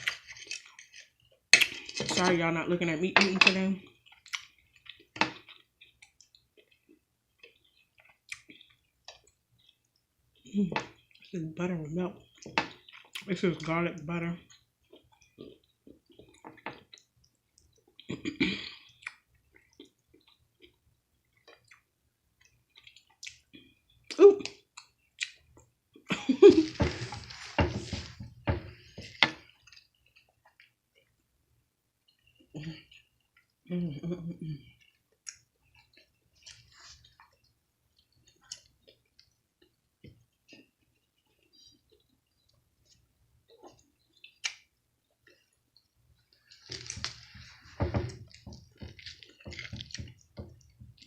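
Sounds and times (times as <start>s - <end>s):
wet chewing and lip smacks: 4.0s - 11.3s, 18.9s - 25.7s, 34.8s - 47.6s, 48.2s - 51.0s.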